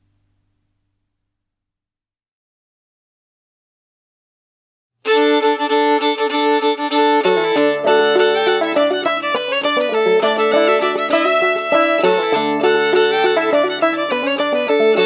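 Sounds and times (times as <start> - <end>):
lower-pitched instrument part: 5.1 - 15.0
old-time fiddle music: 5.1 - 15.0.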